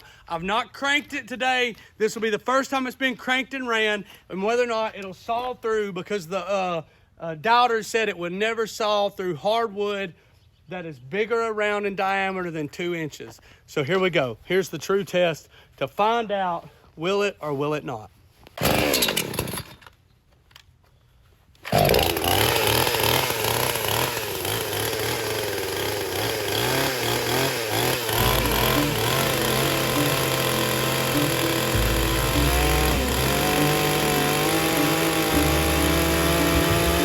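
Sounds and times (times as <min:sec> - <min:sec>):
chainsaw engine revving: 0:18.6 - 0:19.8, 0:21.6 - 0:37.0
chainsaw starter pull: 0:18.6 - 0:20.0, 0:21.6 - 0:37.0.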